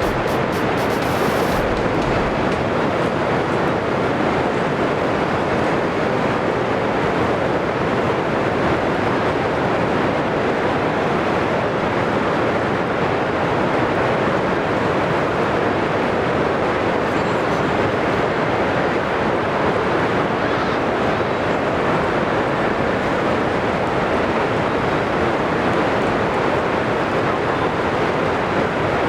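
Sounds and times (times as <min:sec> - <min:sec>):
heavy rain: 0:00.0 - 0:03.4.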